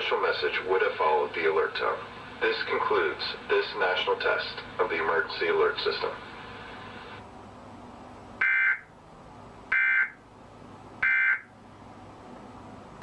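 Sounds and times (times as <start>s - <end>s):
raspy digital squawks: 8.4s - 8.9s, 9.7s - 10.2s, 11.0s - 11.5s.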